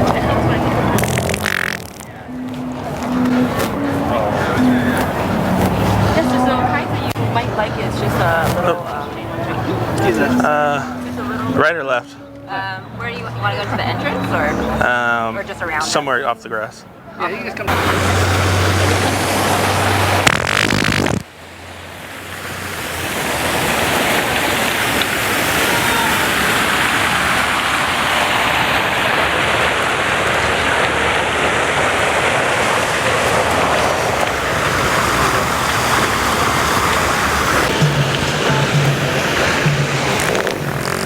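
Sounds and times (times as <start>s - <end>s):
low steady hum: 0.0s - 20.3s
steady rushing noise: 17.4s - 41.0s.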